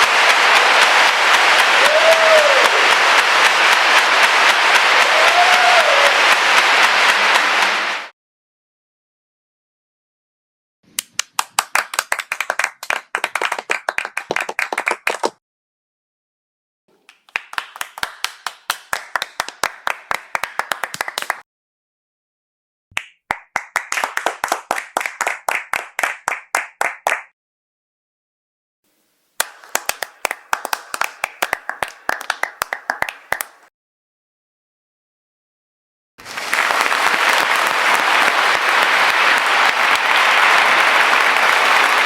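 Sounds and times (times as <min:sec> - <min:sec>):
audience clapping: 0:00.0 - 0:08.1, 0:10.9 - 0:15.4, 0:16.9 - 0:21.4, 0:23.0 - 0:27.3, 0:29.4 - 0:33.7, 0:36.2 - 0:42.0.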